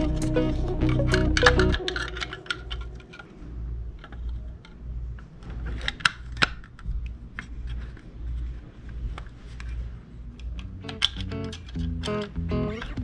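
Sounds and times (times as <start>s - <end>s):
background guitar music: 0.0s - 3.2s, 10.8s - 13.0s
small parts clicking and rustling: 5.5s - 12.3s.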